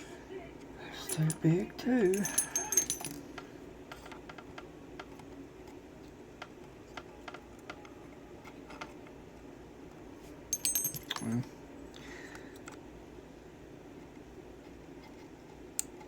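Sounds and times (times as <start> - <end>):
metallic jingle and clinking: 1.0 - 3.3, 10.5 - 11.5.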